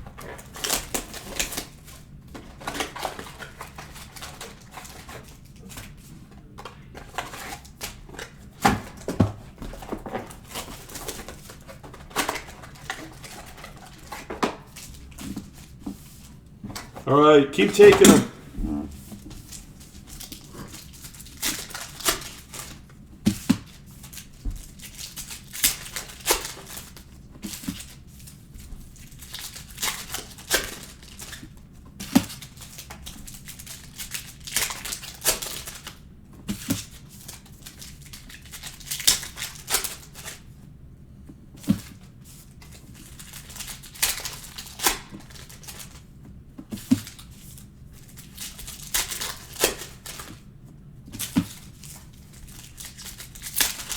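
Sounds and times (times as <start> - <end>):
wrappers crinkling and tearing: 0.2 - 5.9, 19.5 - 22.9, 23.6 - 28.3, 29.0 - 31.5, 32.2 - 36.0, 37.2 - 40.4, 42.8 - 46.0, 48.1 - 50.4, 51.2 - 53.9.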